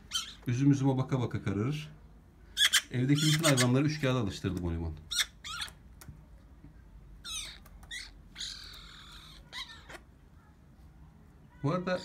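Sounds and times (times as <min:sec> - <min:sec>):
magpie begging calls: 0:07.2 - 0:10.0.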